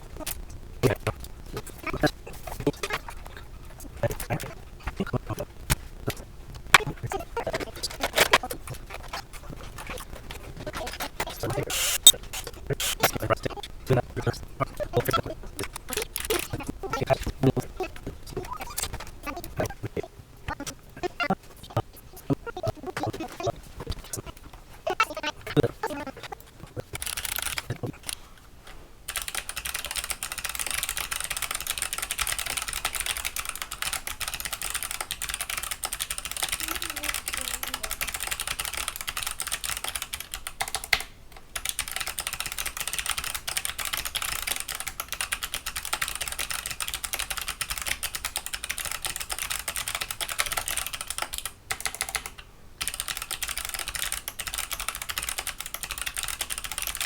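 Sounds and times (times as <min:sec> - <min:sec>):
mechanical keyboard clicking: 0:27.0 - 0:28.2, 0:29.1 - 0:57.0.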